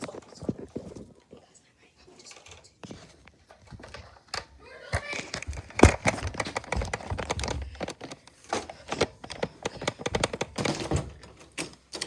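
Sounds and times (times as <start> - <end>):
irregular taps and clicks: 2.4 - 12.0.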